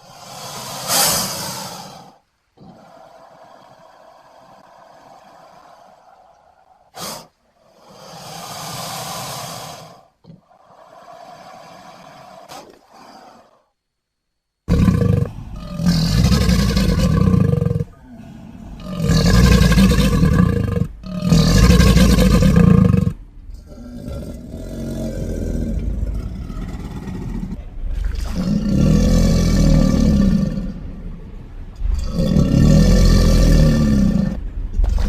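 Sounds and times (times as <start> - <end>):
crocodilian roars: 0.0 - 13.7, 14.7 - 35.0
rumbling growl: 14.7 - 35.0.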